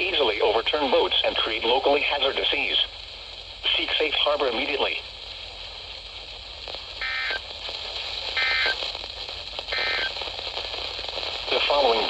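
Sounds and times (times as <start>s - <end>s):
steady radio hiss: 0.0s - 12.0s
digital data tone bursts: 7.0s - 7.4s, 8.4s - 8.8s, 9.7s - 10.2s.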